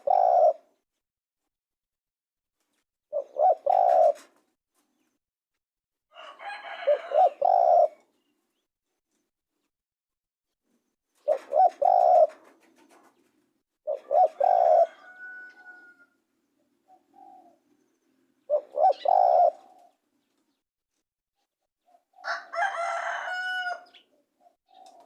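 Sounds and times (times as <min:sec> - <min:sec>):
dove cooing: 0:00.0 - 0:00.7, 0:03.1 - 0:04.3, 0:06.2 - 0:08.1, 0:11.2 - 0:13.0, 0:13.8 - 0:16.1, 0:16.9 - 0:17.6, 0:18.4 - 0:20.0, 0:23.6 - 0:25.0.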